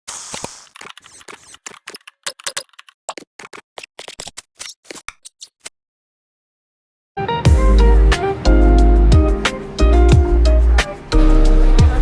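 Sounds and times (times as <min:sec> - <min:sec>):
sharp clicks: 0:00.1 - 0:04.5.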